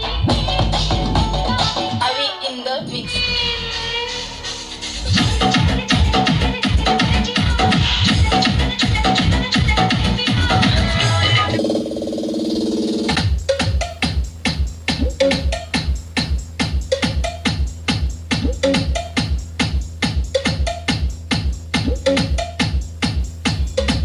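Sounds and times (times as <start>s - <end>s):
drum machine beat with heavy bass: 0.0s - 2.2s, 2.8s - 24.0s.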